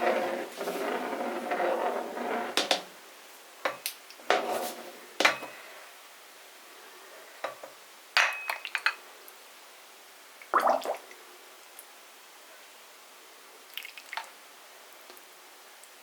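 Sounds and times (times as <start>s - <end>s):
dishes knocking and clinking: 3.7s - 5.6s, 7.5s - 9.0s.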